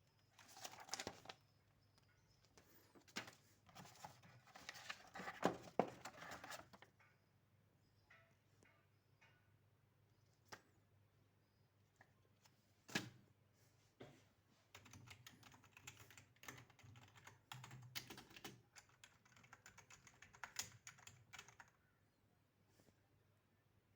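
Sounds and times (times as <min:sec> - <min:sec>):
keyboard typing: 0:14.8 - 0:21.8.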